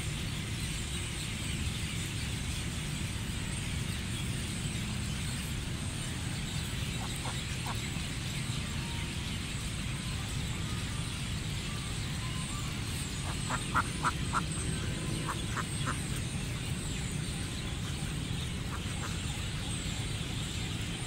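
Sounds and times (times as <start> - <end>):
low rumbling background noise: 0.0 - 21.0.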